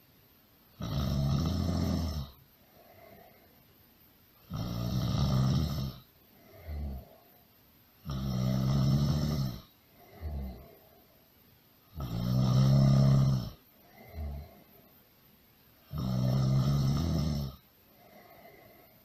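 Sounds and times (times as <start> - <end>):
loud rattling snores: 0.8 - 2.4, 4.5 - 7.2, 8.0 - 10.8, 11.9 - 14.7, 15.9 - 17.6
soft breath: 2.5 - 3.9, 6.2 - 7.7, 9.6 - 11.5, 13.6 - 15.2, 17.7 - 19.0.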